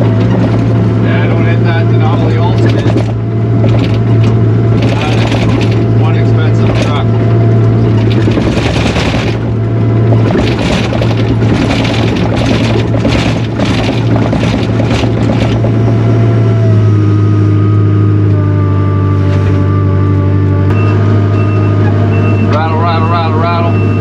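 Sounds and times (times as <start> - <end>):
machine clattering and scraping: 0.0 - 7.1, 7.7 - 16.0
diesel engine running: 0.0 - 24.0.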